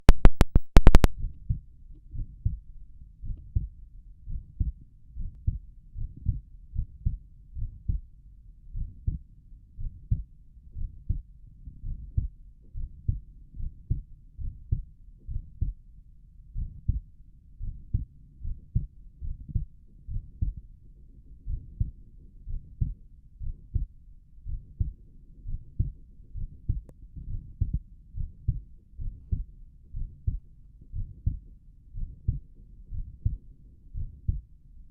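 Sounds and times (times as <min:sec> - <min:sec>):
heartbeat through stethoscope: 0:00.0 - 0:15.9, 0:16.5 - 0:34.5
loud clicks: 0:00.1 - 0:01.2.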